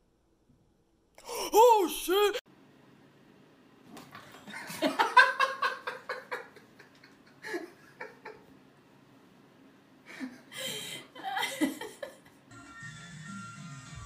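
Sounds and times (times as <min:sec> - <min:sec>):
person laughing: 0:01.2 - 0:02.4, 0:10.1 - 0:12.3.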